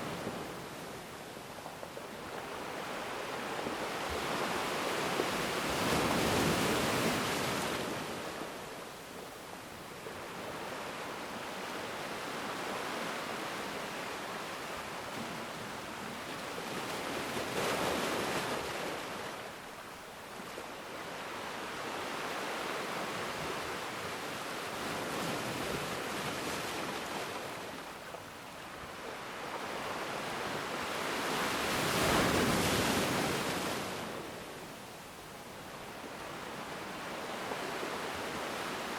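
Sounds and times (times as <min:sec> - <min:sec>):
ocean waves breaking on shore: 0:00.0 - 0:38.9.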